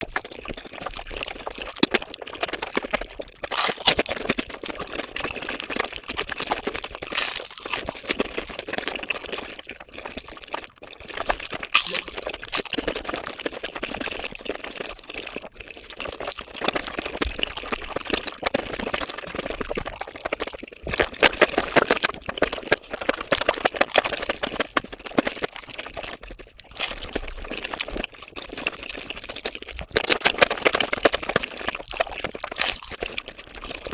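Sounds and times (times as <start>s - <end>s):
sped-up eating sounds: 0.0s - 33.9s
sharp crunches: 11.7s - 12.7s.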